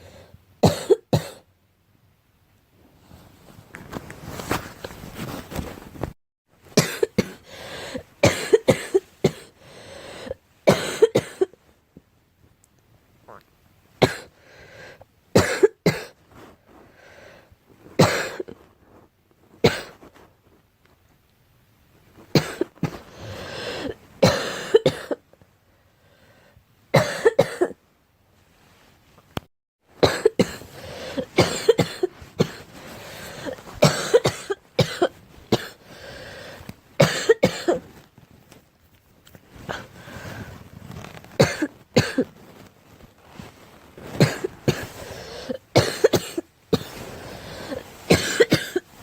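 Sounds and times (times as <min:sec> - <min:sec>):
girl coughing: 0:00.6 - 0:01.4, 0:06.8 - 0:07.4, 0:08.2 - 0:09.5, 0:10.7 - 0:11.5, 0:14.0 - 0:14.3, 0:15.4 - 0:16.2, 0:18.0 - 0:18.5, 0:19.6 - 0:20.0, 0:24.2 - 0:25.2, 0:27.0 - 0:27.8, 0:30.0 - 0:32.6, 0:33.4 - 0:35.8, 0:37.0 - 0:37.8, 0:41.4 - 0:42.2, 0:44.2 - 0:46.9, 0:47.7 - 0:48.9.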